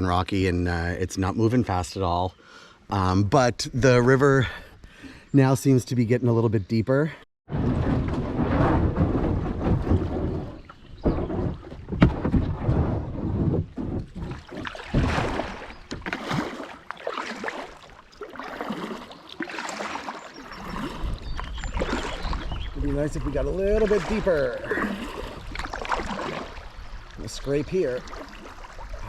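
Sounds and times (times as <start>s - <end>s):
wind rumble on microphone: 7.5s - 16.0s, 20.5s - 25.8s
paddle splashes: 7.5s - 29.0s.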